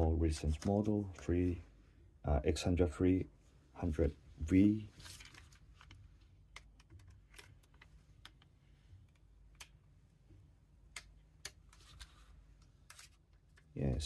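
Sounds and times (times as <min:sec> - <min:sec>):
faint clicks and taps: 0:05.2 - 0:14.0.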